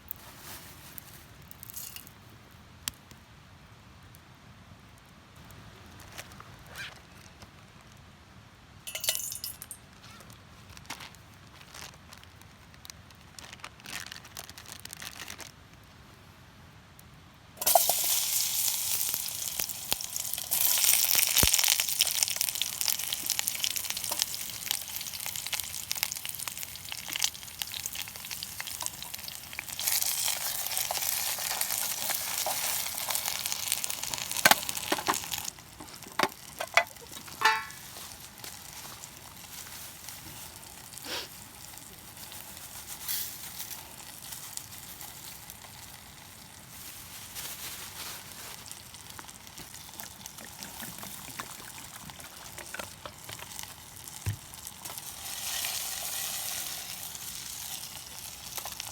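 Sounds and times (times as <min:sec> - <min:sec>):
food sizzling in a pan: 0:17.6 - 0:35.6, 0:36.2 - 0:58.9.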